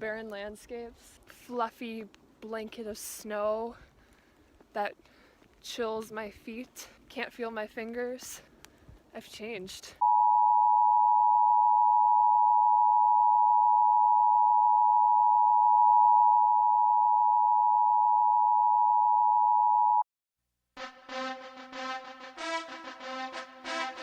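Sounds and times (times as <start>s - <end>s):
music: 20.8s - 24.0s.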